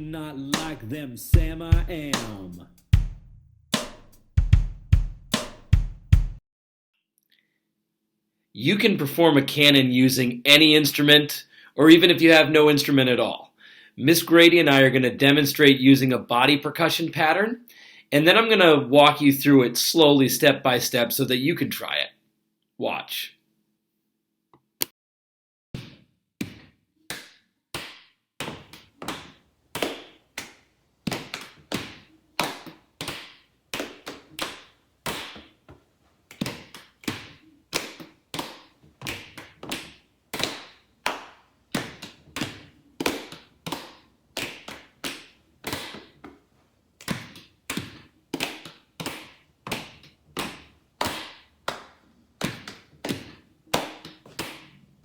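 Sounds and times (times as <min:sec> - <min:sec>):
thigh and belly slaps: 0:00.0 - 0:01.0, 0:03.8 - 0:06.4, 0:25.8 - 0:46.4, 0:47.0 - 0:54.8
hand claps: 0:00.0 - 0:02.6, 0:03.8 - 0:04.2, 0:05.3 - 0:05.9, 0:27.1 - 0:35.6, 0:36.3 - 0:46.4, 0:47.0 - 0:54.8
feet stomping: 0:00.0 - 0:06.4.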